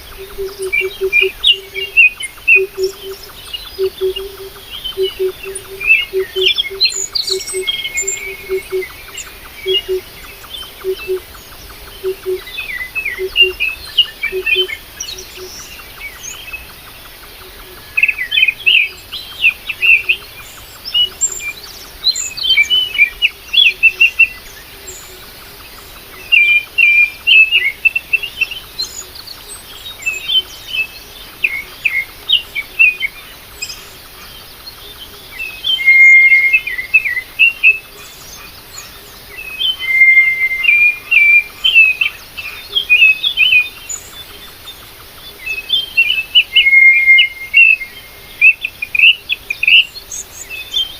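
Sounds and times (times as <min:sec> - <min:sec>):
birds chirping: 0:00.0 - 0:50.9.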